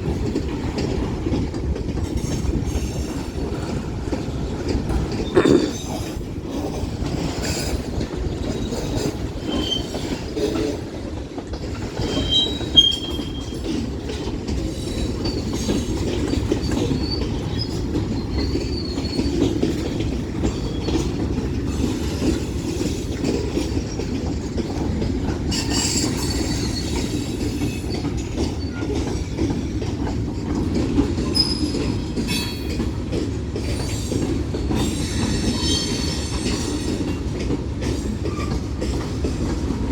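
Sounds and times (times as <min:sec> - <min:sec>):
train wheels rumbling on rail: 0:00.0 - 0:39.9
high-pitched wheel squeals: 0:12.1 - 0:13.6.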